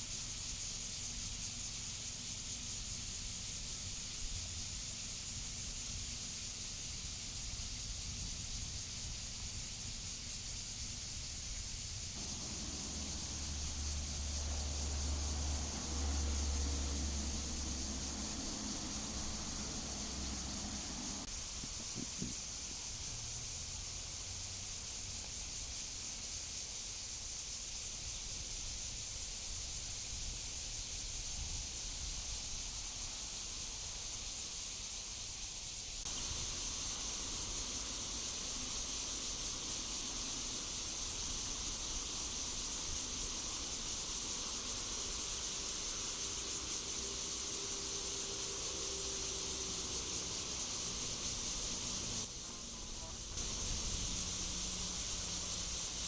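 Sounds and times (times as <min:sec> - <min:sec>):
cicadas singing: 0:00.0 - 0:56.0
low rumble: 0:12.2 - 0:21.3.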